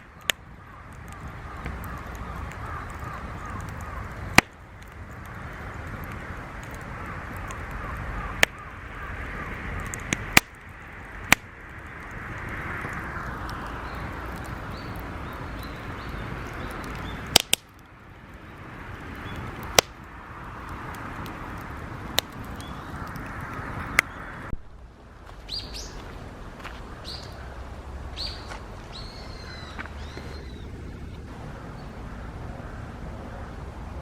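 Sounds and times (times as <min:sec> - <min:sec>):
sharp wooden cracks and knocks: 0:00.0 - 0:08.7, 0:09.8 - 0:11.8, 0:16.4 - 0:17.9, 0:19.4 - 0:20.1
steady rushing hiss: 0:00.0 - 0:34.0.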